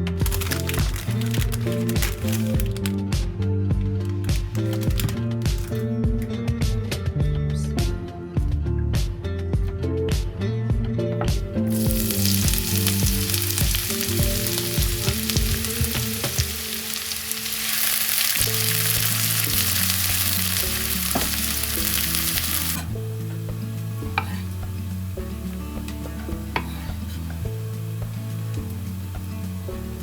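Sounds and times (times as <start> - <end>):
food sizzling in a pan: 0.0 - 2.9, 11.7 - 30.0
background music: 0.0 - 30.0.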